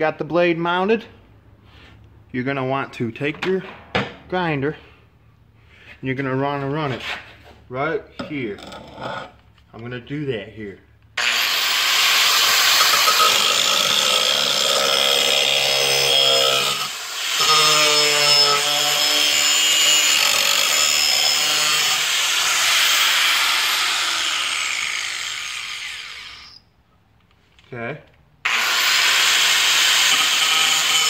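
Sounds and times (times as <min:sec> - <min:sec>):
power grinder grinding steel: 0:11.2 - 0:26.6, 0:28.5 - 0:31.0.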